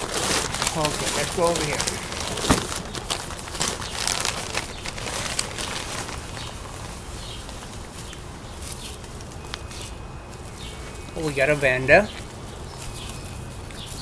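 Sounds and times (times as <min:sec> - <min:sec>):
packing material crinkling: 0:00.0 - 0:14.0.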